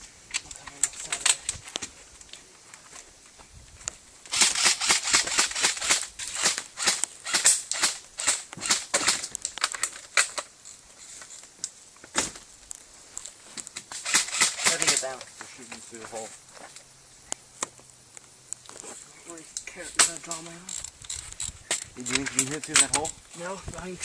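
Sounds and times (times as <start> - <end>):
airsoft guns firing: 4.3 - 9.3, 14.0 - 15.2.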